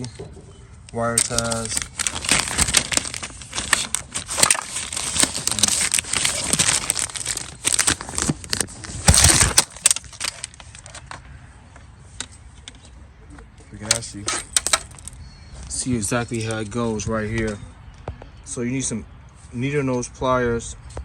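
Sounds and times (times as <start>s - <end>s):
cable clicks and rattles: 0.9s - 11.2s, 13.8s - 15.2s
plastic packaging rustling: 1.0s - 11.3s, 13.8s - 16.6s.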